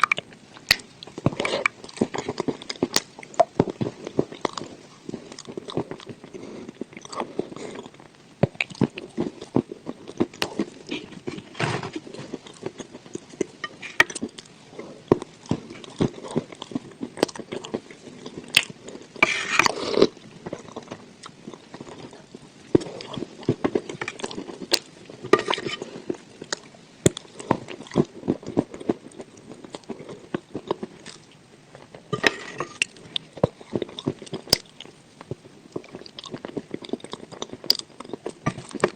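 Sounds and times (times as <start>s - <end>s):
chewing crunchy food: 0.0s - 38.9s.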